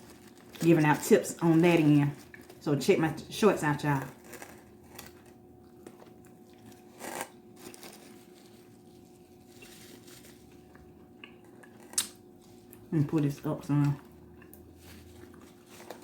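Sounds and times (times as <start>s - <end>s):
faint steady hum: 0.0s - 16.0s
person chewing food: 4.1s - 8.4s, 10.5s - 12.9s, 14.0s - 16.0s.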